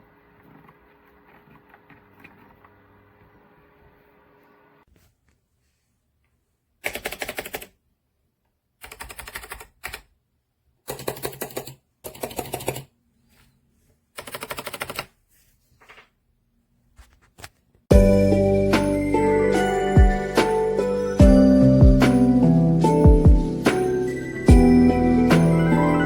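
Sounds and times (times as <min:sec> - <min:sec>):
rapid mechanical keyboard clacks: 0:06.8 - 0:07.7, 0:08.8 - 0:10.1, 0:10.9 - 0:12.9, 0:14.2 - 0:15.1.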